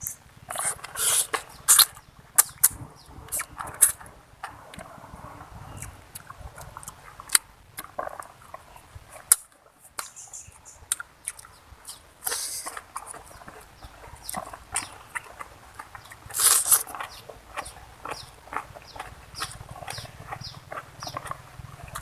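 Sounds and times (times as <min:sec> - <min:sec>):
wet chewing and lip-smacking: 0:00.0 - 0:22.0.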